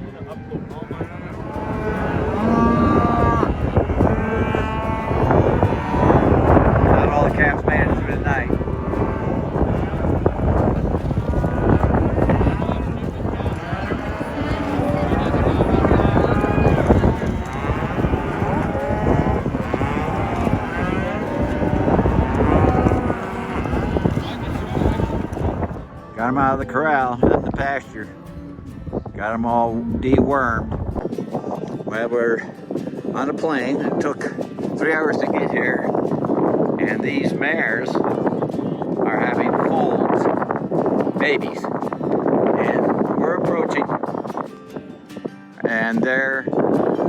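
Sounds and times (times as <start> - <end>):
cattle mooing: 0.7 - 26.8, 29.6 - 31.0.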